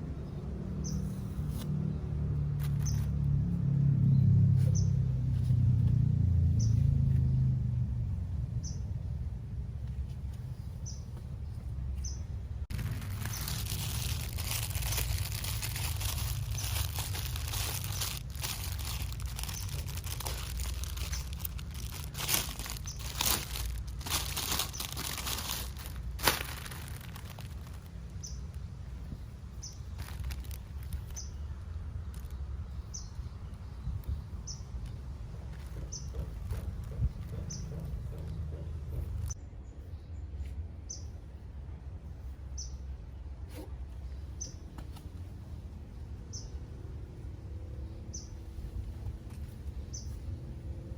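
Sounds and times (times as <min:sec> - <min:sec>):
plastic packaging crinkling: 0:12.7 - 0:28.2, 0:29.9 - 0:31.2.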